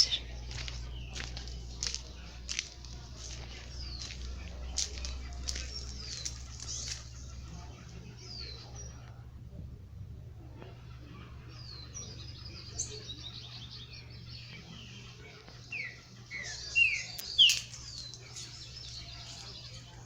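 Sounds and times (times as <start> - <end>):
birds chirping: 0.0 - 20.0
steady low hum: 0.0 - 20.0.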